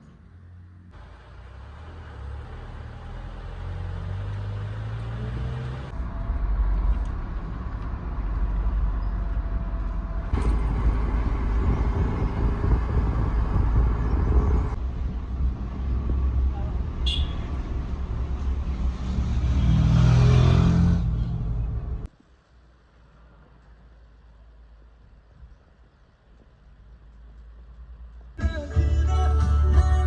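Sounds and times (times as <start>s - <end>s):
road noise: 0.0s - 30.0s
car engine accelerating: 1.0s - 17.0s, 17.6s - 22.1s.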